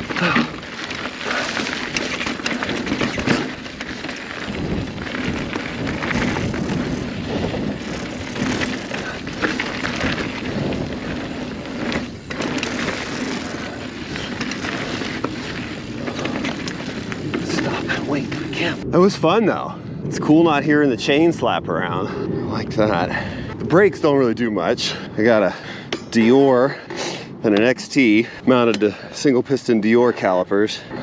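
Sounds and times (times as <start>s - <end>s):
bike tyre roar on dirt: 0.0s - 24.6s.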